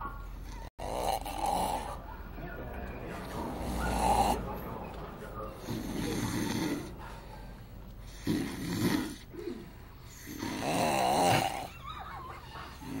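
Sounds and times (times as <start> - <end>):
person snoring: 0.8 - 1.9, 3.6 - 4.4, 5.6 - 7.0, 8.1 - 11.7.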